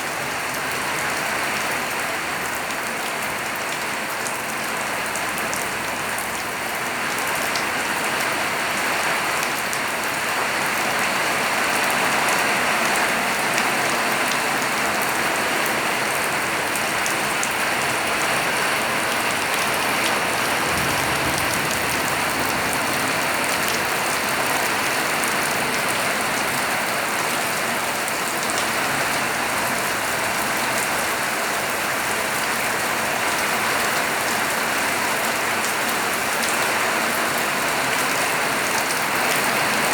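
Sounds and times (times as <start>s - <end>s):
steady rain: 0.0s - 39.9s
raindrops ticking on surface: 16.0s - 27.4s.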